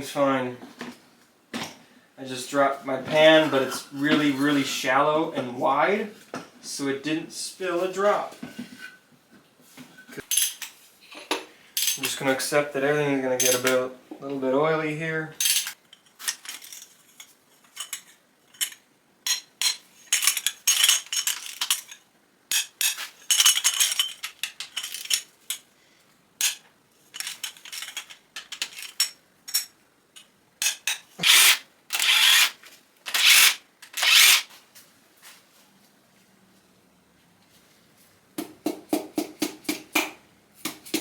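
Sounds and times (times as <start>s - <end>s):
metal tools clinking and scraping: 10.0s - 10.8s, 11.8s - 12.2s, 13.4s - 13.8s, 15.4s - 25.7s, 26.4s - 32.5s.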